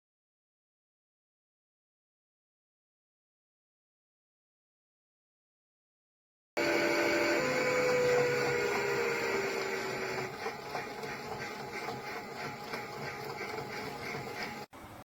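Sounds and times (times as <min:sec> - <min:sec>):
rhythmic electronic churning: 0:07.5 - 0:14.7.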